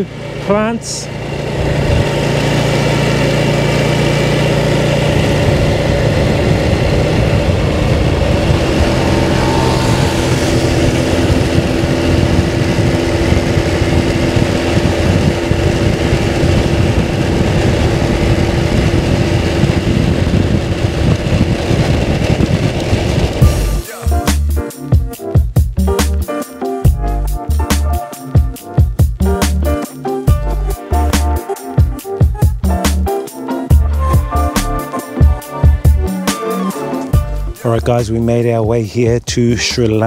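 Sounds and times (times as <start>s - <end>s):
motorbike engine running: 0.0s - 23.8s
wind and road noise: 0.0s - 23.8s.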